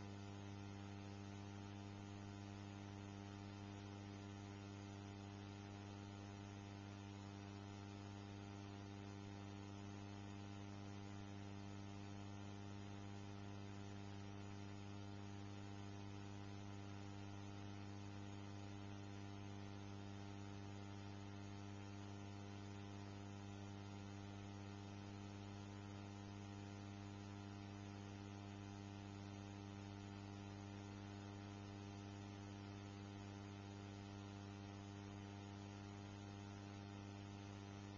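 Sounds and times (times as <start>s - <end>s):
electrical mains hum: 0.0s - 37.9s.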